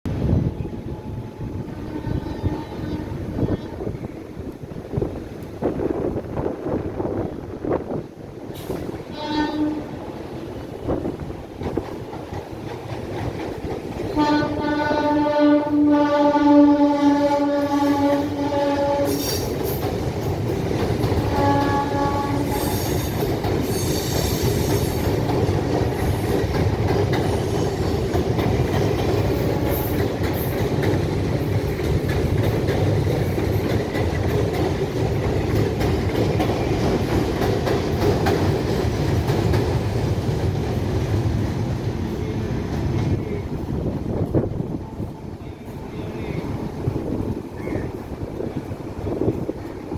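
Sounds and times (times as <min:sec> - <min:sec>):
train horn blasts: 0:00.5 - 0:04.1, 0:09.0 - 0:10.0, 0:14.1 - 0:19.5, 0:21.3 - 0:23.2, 0:29.3 - 0:30.0, 0:44.6 - 0:46.6
wheels clattering on rails: 0:04.4 - 0:49.9.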